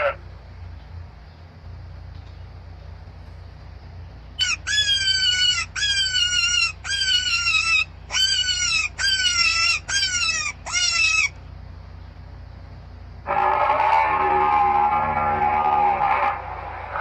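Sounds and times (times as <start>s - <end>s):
bird calling: 4.1s - 12.3s.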